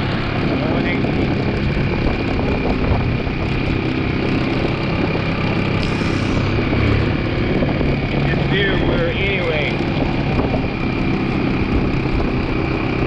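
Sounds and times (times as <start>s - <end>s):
engine running steadily: 0.0s - 13.0s.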